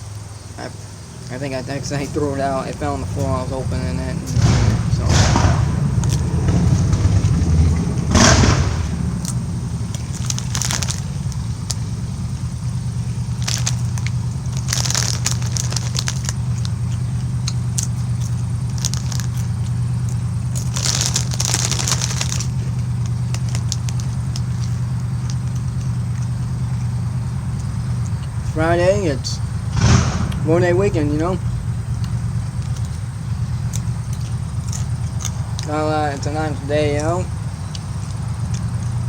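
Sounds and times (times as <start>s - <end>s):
chips crunching: 0.0s - 29.2s, 29.8s - 39.0s
steady low hum: 0.0s - 39.0s.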